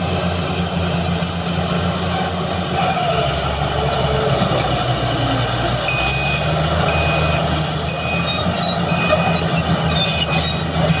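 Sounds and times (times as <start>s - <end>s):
bulldozer diesel engine running: 0.0s - 11.0s
reversing alarm beeping: 5.9s - 9.6s.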